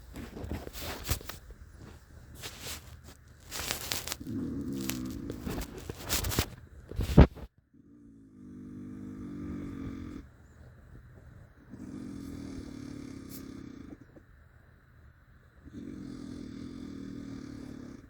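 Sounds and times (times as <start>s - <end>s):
rasping breaths: 0.0s - 7.3s
loud buzzing snoring: 3.5s - 10.3s, 11.7s - 14.1s, 15.6s - 18.0s.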